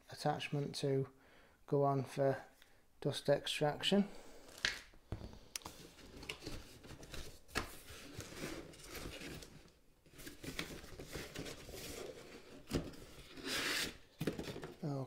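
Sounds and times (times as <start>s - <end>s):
plastic packaging rustling: 5.7s - 14.9s.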